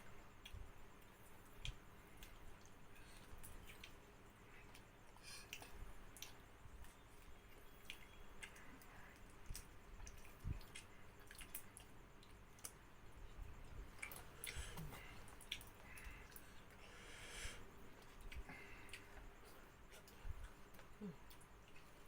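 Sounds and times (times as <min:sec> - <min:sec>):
soft wet chewing: 0:00.4 - 0:22.0.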